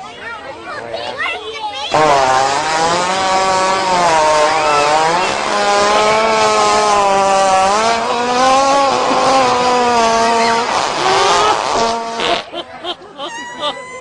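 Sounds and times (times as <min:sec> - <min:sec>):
buzzing fart sound: 0:01.9 - 0:12.6.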